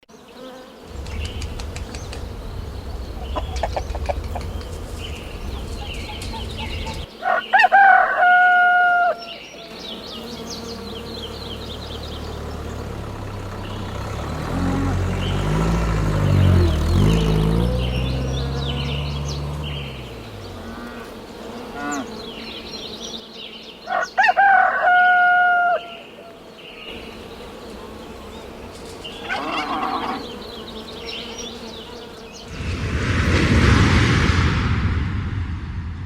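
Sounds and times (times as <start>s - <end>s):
low drawn-out call: 0.9s - 7.1s
steady low rumble: 0.9s - 7.1s, 32.5s - 36.0s
rooster crowing: 3.2s - 4.7s, 5.5s - 9.4s, 23.9s - 26.1s, 29.2s - 30.3s.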